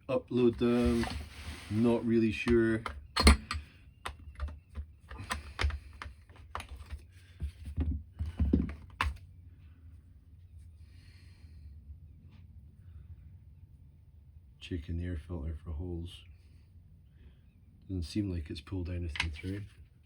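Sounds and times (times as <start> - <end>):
plastic parts clicking and knocking: 2.4 - 9.2.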